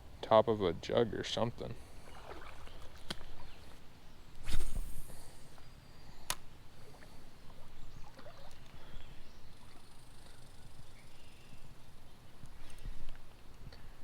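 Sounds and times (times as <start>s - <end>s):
water sloshing around legs: 2.0s - 3.8s.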